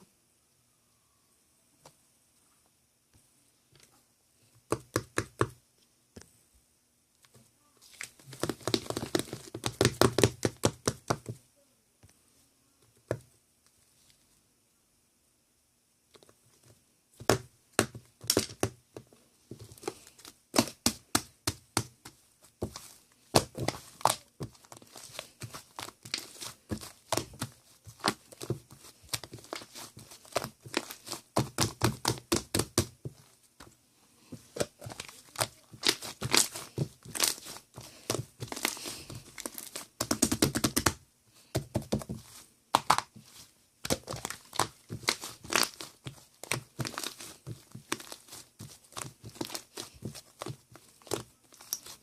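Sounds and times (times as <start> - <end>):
rustling: 17.9 - 52.0
crinkling and tearing: 22.7 - 32.4, 34.6 - 40.8, 42.0 - 52.0.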